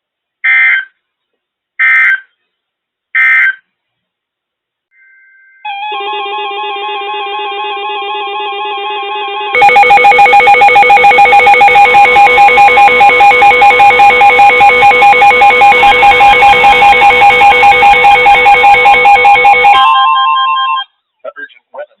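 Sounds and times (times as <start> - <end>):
loud rapid alarm beeping: 9.6 - 20.4
steady electronic tone chord: 9.6 - 20.4.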